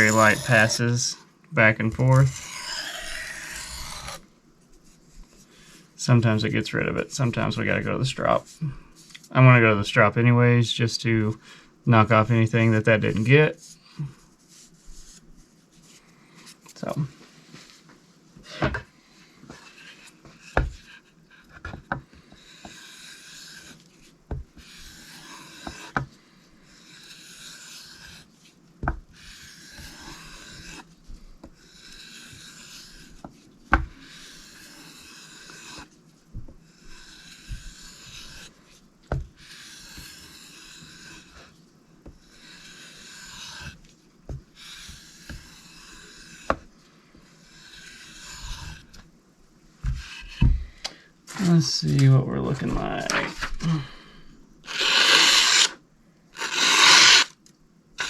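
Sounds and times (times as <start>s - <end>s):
knife sharpening strokes: 56.4s - 57.3s.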